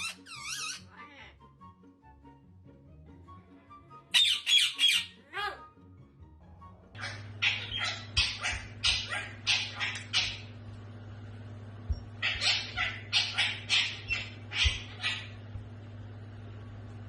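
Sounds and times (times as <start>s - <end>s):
dog yapping: 7.0s - 10.5s, 12.2s - 15.4s
steady low hum: 7.0s - 17.0s.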